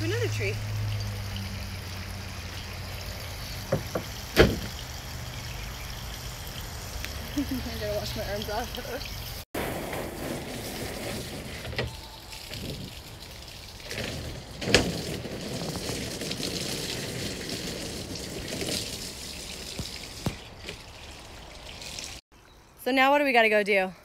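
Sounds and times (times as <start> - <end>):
running water splashing: 0.0 - 22.2
sharp knocks: 3.7 - 4.8.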